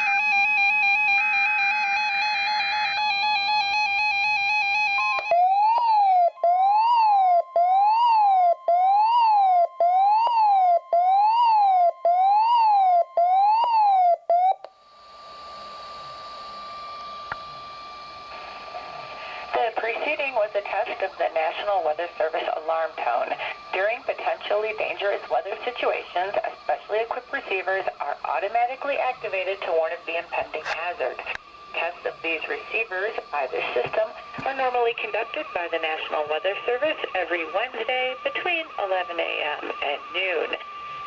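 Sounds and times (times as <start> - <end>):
fast-warbling electronic alarm: 0.0 - 41.0
siren sweeping up and down: 0.0 - 41.0
steady alarm tone: 0.0 - 41.0
radio static: 18.3 - 41.0.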